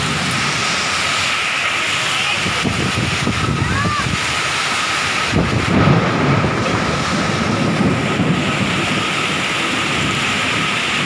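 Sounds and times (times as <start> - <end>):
wind buffeting microphone: 2.3 - 11.0.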